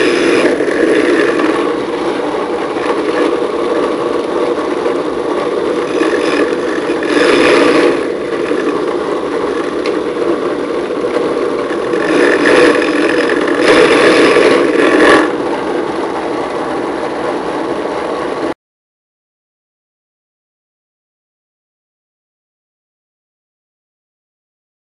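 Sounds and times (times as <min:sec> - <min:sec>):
small motor running: 0:00.0 - 0:18.5.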